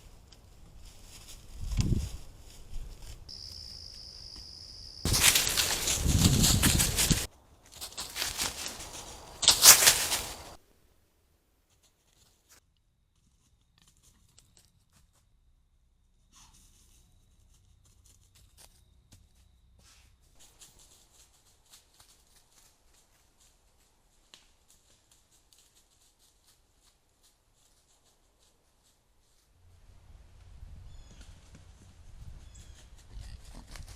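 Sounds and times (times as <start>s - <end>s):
faint rustles and clicks: 0.0s - 3.3s, 5.1s - 10.6s, 20.4s - 29.6s.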